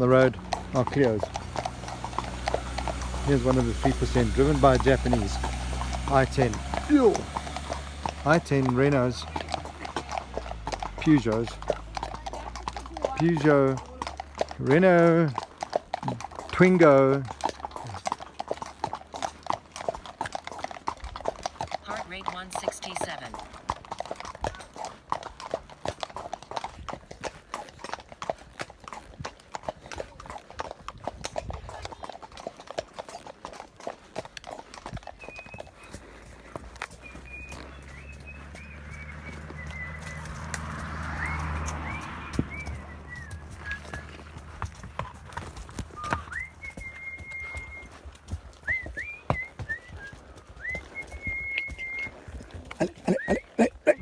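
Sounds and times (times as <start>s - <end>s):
horse hooves clip-clopping: 0.0s - 54.0s
high thin whistle: 46.0s - 47.9s, 48.6s - 52.2s.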